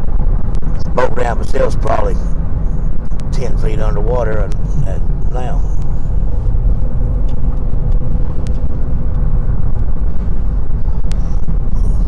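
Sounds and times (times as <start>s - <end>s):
road and engine rumble: 0.0s - 12.0s
faint steady hum: 0.4s - 8.5s.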